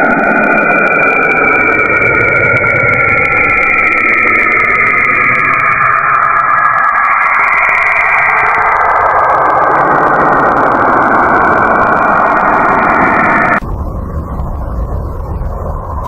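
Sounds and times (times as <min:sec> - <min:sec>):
lower quieter tone: 0:00.0 - 0:16.0
dense rushing noise: 0:03.2 - 0:16.0.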